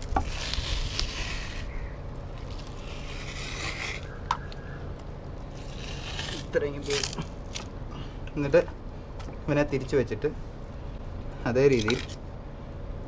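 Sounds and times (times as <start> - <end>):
fish skin tearing off flesh: 0.0 - 1.7.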